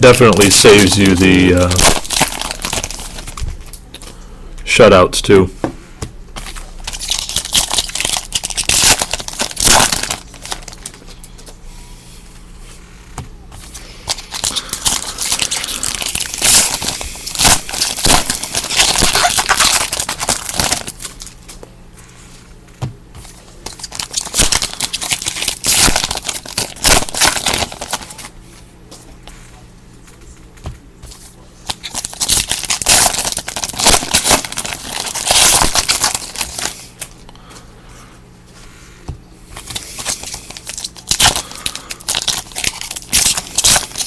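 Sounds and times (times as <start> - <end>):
wrappers torn and crinkled: 0.0 - 4.0, 6.4 - 11.0, 14.1 - 21.4, 23.7 - 28.3, 31.6 - 37.1, 39.6 - 44.0.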